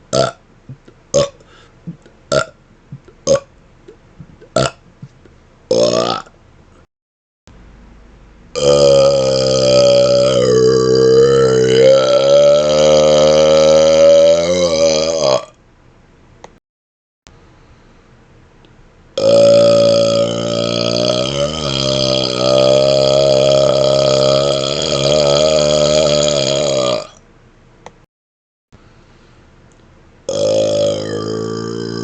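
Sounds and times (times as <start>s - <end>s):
man burping loudly: 0.1s - 3.5s, 4.4s - 4.8s, 5.7s - 6.3s, 8.6s - 15.6s, 19.2s - 27.2s, 30.3s - 32.0s.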